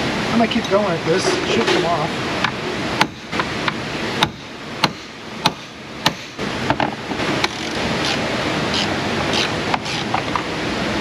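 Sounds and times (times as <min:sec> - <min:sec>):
sharp metal knocks: 0:01.3 - 0:08.2.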